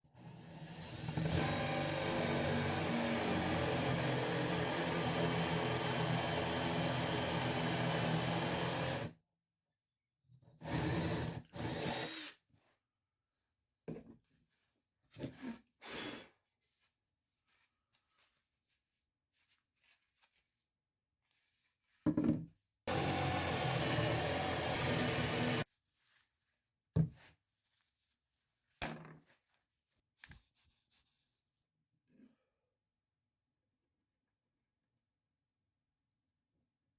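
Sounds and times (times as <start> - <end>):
electric drill drilling wood: 0.2 - 9.1, 10.6 - 12.4, 22.9 - 25.6
objects knocking on work surface: 22.0 - 22.5, 28.8 - 29.2.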